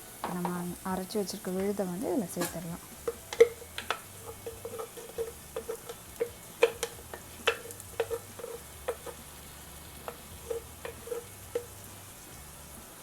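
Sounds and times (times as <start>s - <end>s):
faint sizzle: 0.0s - 13.0s
metal spoon clinking in frying pan: 3.0s - 9.3s, 10.0s - 11.9s.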